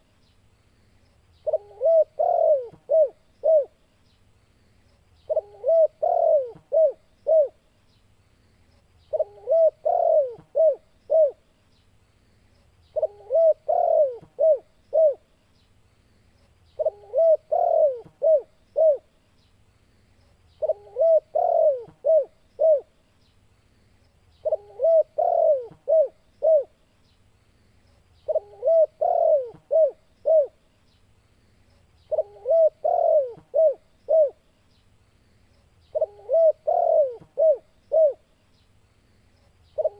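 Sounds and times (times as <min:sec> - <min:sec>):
dove cooing: 0:01.4 - 0:03.8, 0:05.3 - 0:07.6, 0:09.1 - 0:11.4, 0:12.9 - 0:15.3, 0:16.8 - 0:19.1, 0:20.6 - 0:22.9, 0:24.4 - 0:26.8, 0:28.2 - 0:30.6, 0:32.1 - 0:34.4, 0:35.9 - 0:38.3.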